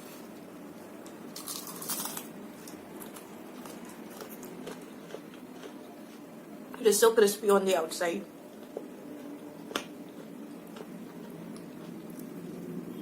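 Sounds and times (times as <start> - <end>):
crunchy bite into fried snack: 1.4 - 2.3
close-up chewing: 1.4 - 6.3.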